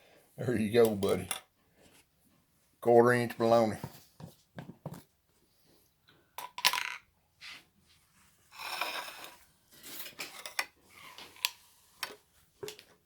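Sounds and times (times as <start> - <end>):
knife scraping inside a jar: 8.6 - 11.5.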